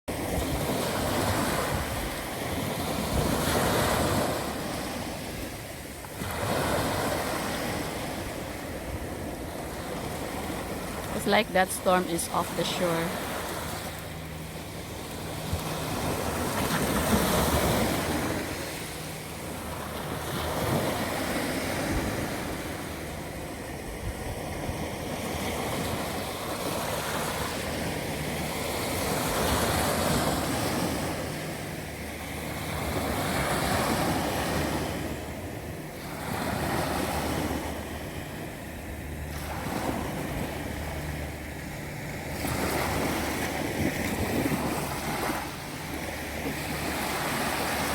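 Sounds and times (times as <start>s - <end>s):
ocean waves breaking on shore: 0.1s - 47.9s
person speaking: 11.2s - 13.2s.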